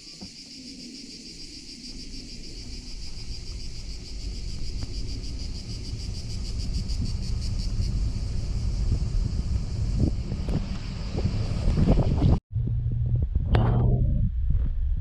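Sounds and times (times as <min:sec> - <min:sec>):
cicadas singing: 0:00.0 - 0:11.8
low rumble: 0:02.6 - 0:15.0.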